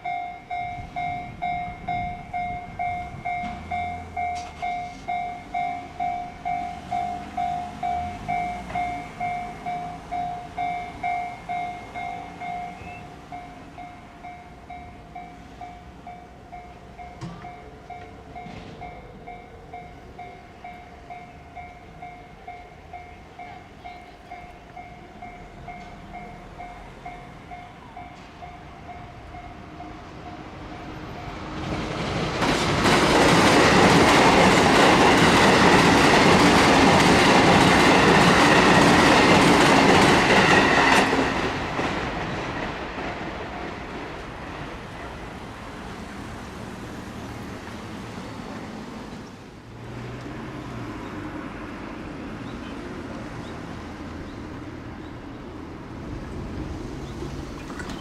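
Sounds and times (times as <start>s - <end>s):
level-crossing warning bell: 0.0s - 44.0s
train passing with clattering wheels: 0.0s - 58.0s.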